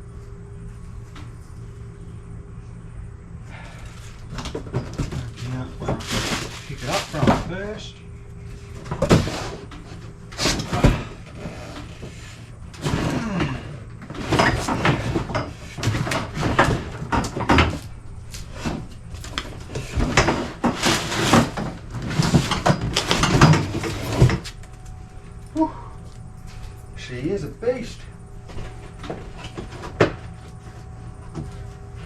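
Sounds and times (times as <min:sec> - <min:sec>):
cardboard scraping and rustling: 0:05.1 - 0:07.6, 0:08.9 - 0:13.2, 0:14.1 - 0:24.6.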